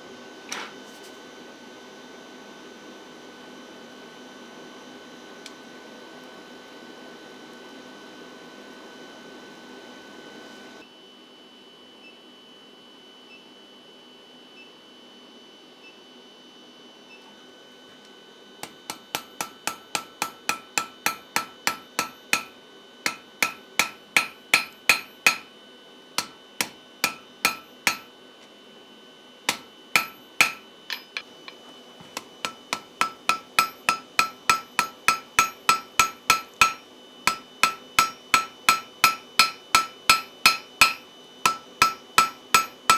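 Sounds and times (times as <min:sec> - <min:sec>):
hammer ringing on hot iron: 0:18.6 - 0:25.5, 0:26.2 - 0:28.2, 0:29.5 - 0:31.6, 0:32.2 - 0:42.9
induction forge high whine: 0:18.6 - 0:25.5, 0:26.2 - 0:28.2, 0:29.5 - 0:42.9.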